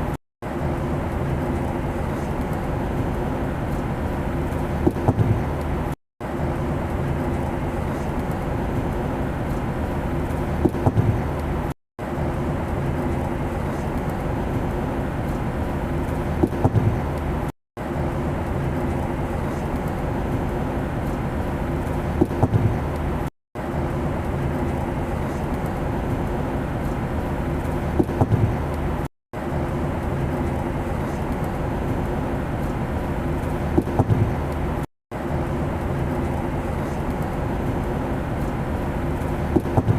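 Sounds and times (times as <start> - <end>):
airplane engine drone: 0.0 - 39.9.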